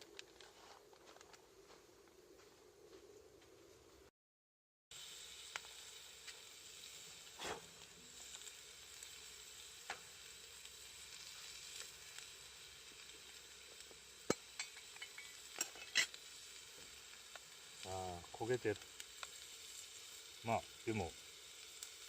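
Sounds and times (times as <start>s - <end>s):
fire clicks and pops: 0.0s - 1.5s, 5.3s - 6.6s, 7.2s - 22.0s
food sizzling in a pot: 4.9s - 22.0s.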